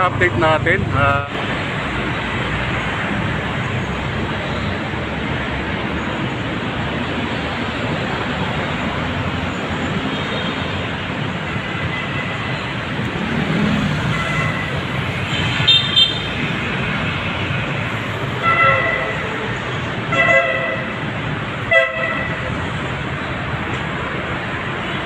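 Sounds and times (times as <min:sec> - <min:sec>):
passing cars and trucks: 0:00.0 - 0:25.0
car horn toot: 0:20.1 - 0:20.9, 0:21.7 - 0:22.4.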